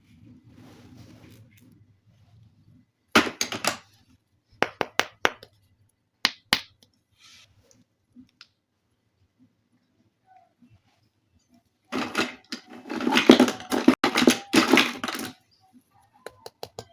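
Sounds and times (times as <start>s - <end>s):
soft rustle: 0.0s - 2.8s, 7.1s - 8.0s
plastic toy pieces clicking: 12.0s - 15.4s.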